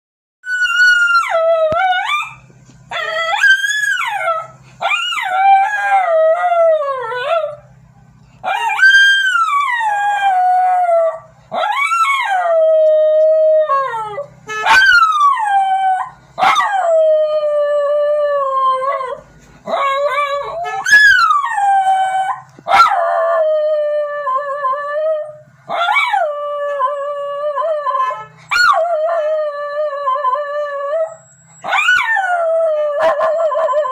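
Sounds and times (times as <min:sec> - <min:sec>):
dog howling: 0:08.4 - 0:33.9.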